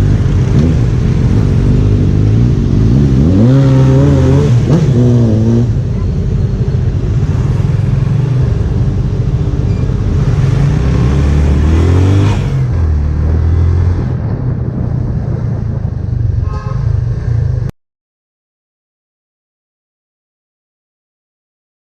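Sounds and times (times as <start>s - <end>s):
motorcycle engine revving: 0.0s - 15.8s.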